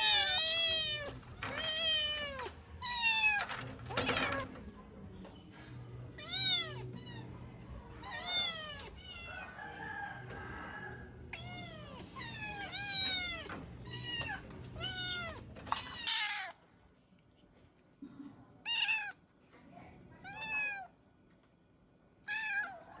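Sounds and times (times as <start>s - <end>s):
kittens meowing: 0.0s - 4.4s, 6.2s - 16.5s
low background hum: 0.0s - 23.0s.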